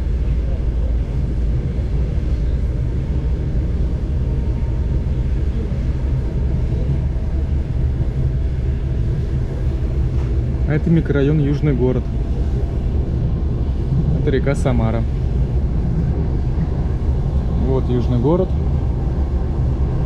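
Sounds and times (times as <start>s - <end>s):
train wheels rumbling on rails: 0.0s - 20.0s.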